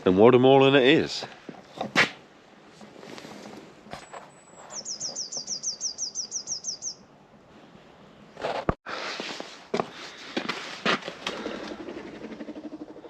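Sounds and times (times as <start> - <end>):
small songbird singing: 4.3 - 7.1.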